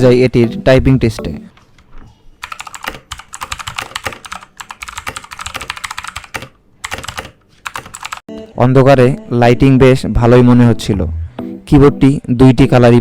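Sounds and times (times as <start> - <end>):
mechanical keyboard typing: 2.4 - 8.2.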